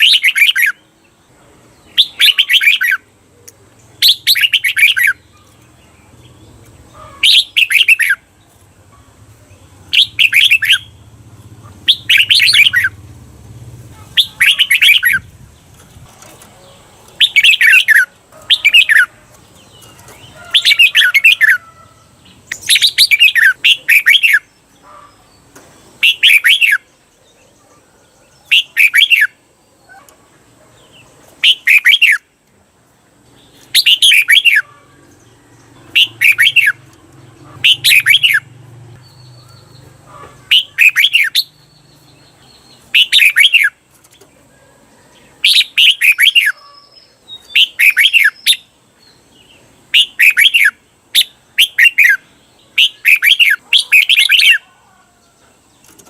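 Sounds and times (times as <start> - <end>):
bulbul singing whistled phrases: 0.0 - 1.2, 1.9 - 3.2, 3.8 - 5.6, 7.1 - 8.3, 9.9 - 11.1, 11.8 - 13.1, 14.0 - 15.4, 17.2 - 21.7, 22.4 - 24.6, 26.0 - 26.9, 28.4 - 30.1, 31.4 - 32.3, 33.5 - 34.8, 35.8 - 36.9, 37.6 - 43.8, 45.4 - 54.8.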